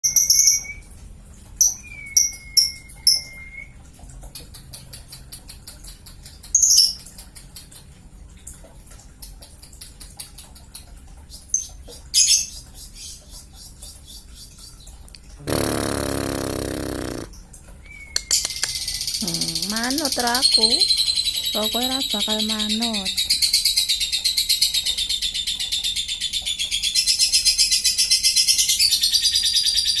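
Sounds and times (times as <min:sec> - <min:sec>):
lovebird chirping: 0:01.6 - 0:03.7, 0:17.9 - 0:23.3
lovebird trilling: 0:01.6 - 0:03.7.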